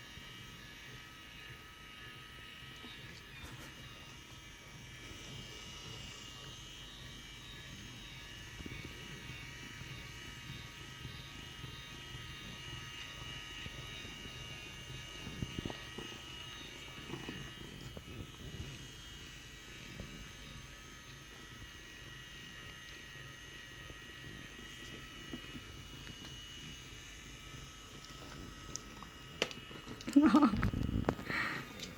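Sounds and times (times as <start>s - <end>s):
small motor whirring: 0.0s - 31.9s.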